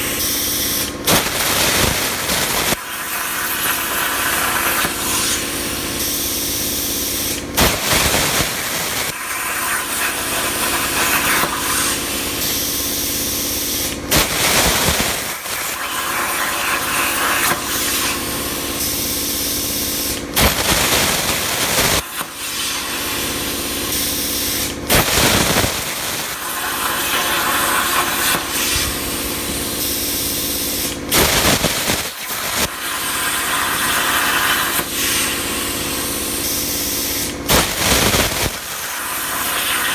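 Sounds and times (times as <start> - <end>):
plasma cutter hissing: 0.0 - 39.9.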